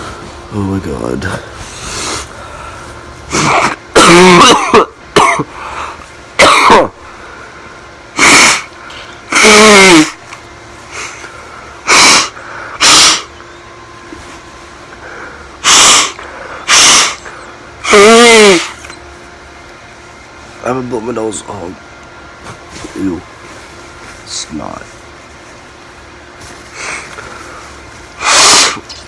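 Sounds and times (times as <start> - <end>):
person coughing: 3.3 - 5.6, 6.4 - 7.0.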